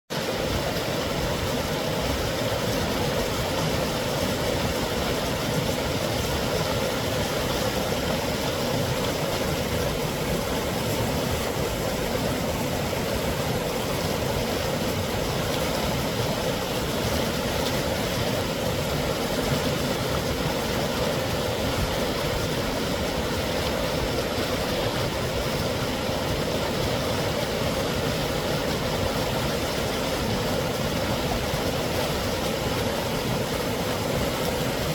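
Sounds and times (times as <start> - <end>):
creek water rushing over rocks: 0.1 - 34.9.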